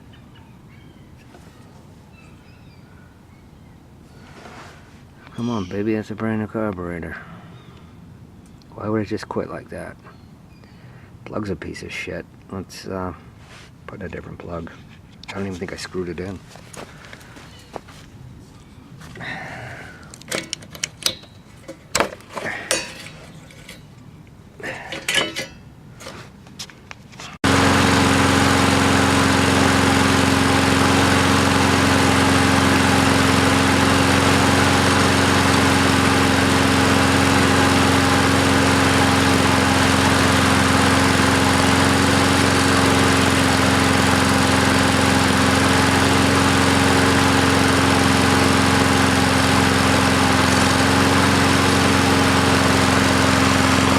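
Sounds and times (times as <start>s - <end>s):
lawn mower engine running: 19.0s - 26.4s, 27.4s - 53.9s.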